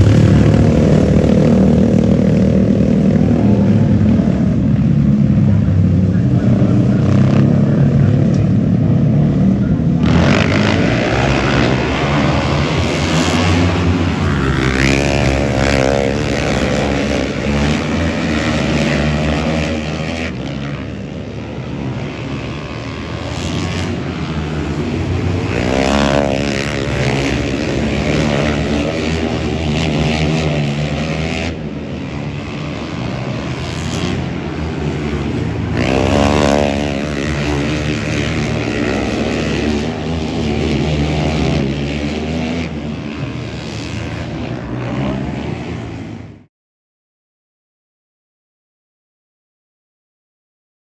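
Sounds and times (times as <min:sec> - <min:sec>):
vehicle engines revving: 0:00.0 - 0:46.5.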